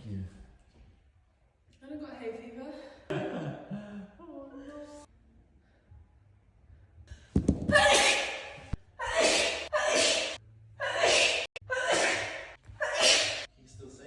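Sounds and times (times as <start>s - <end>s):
woman sneezing: 7.8s - 13.5s.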